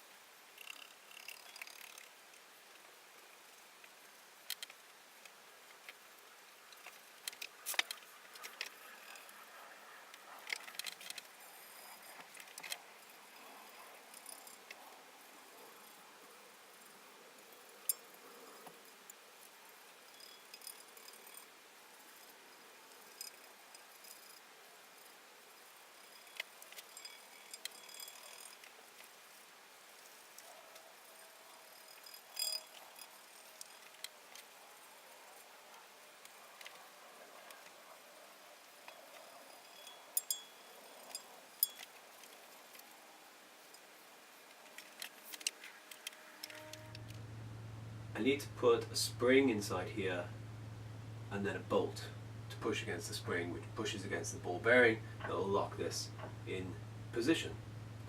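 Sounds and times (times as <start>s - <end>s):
metal parts clicking and clinking: 25.6s - 29.1s, 31.1s - 34.5s, 38.8s - 42.9s.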